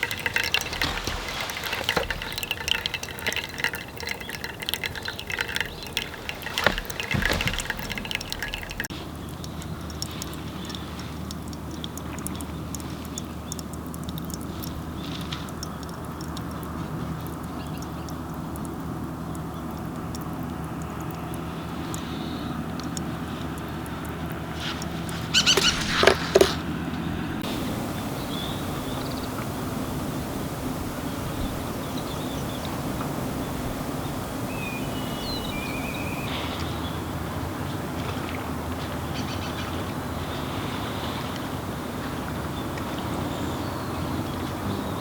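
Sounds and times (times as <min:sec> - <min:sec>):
clinks and clatter: 0:00.0 - 0:10.2
liquid being poured: 0:00.0 - 0:26.8, 0:27.4 - 0:36.8
steady low hum: 0:27.1 - 0:36.4.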